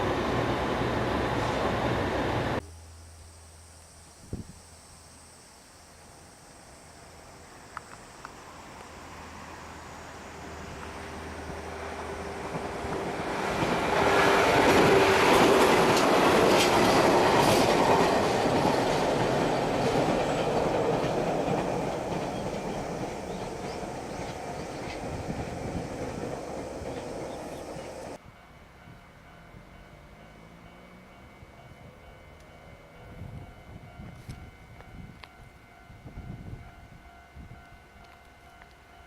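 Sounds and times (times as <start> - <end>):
electric train passing: 0.0 - 39.0
wheels clacking over rail joints: 10.7 - 28.2.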